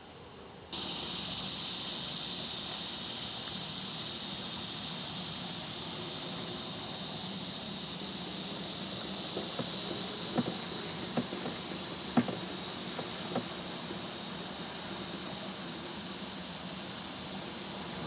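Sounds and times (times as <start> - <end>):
sharp knocks: 10.4 - 13.5.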